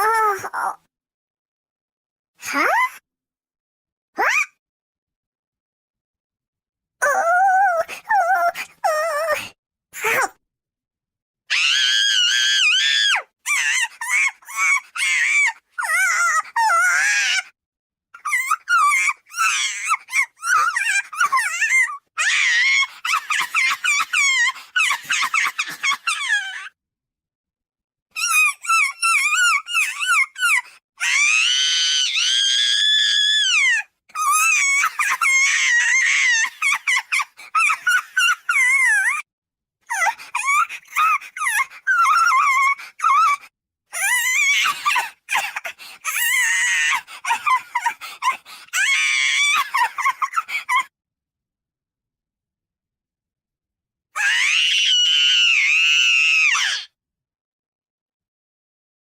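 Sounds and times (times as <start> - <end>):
woman squealing: 18.2 - 26.7, 28.2 - 39.2, 39.9 - 43.4, 44.0 - 50.9
pitch-raised voice squealing: 54.2 - 56.9.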